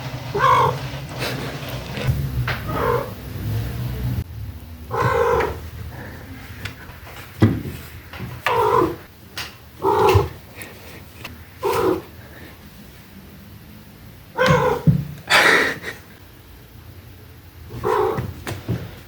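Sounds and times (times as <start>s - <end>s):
cat trilling: 0.3s - 0.8s, 2.6s - 3.2s, 4.9s - 5.7s, 8.5s - 9.1s, 9.8s - 10.4s, 11.6s - 12.1s, 14.3s - 15.0s, 17.7s - 18.4s.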